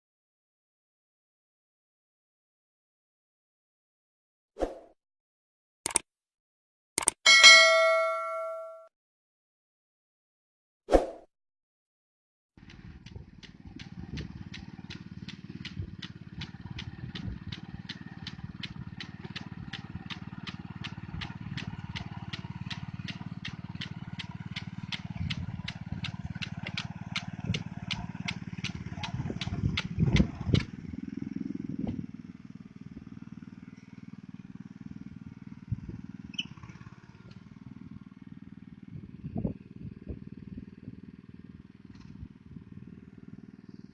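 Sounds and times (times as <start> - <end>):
regular clicking: 5.9 - 6.1, 7.0 - 7.2, 12.6 - 30.7
small engine running: 12.6 - 43.9.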